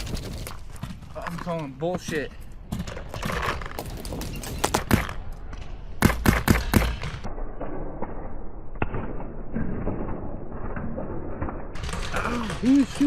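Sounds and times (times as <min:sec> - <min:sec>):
wind rumbling on microphone: 0:00.0 - 0:00.9.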